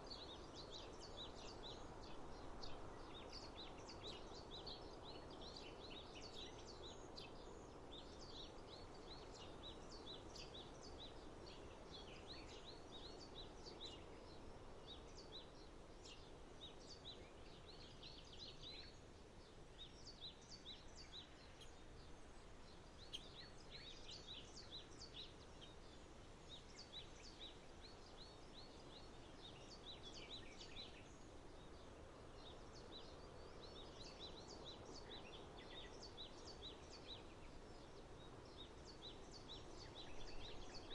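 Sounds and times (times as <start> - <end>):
birds chirping: 20.3 - 31.2.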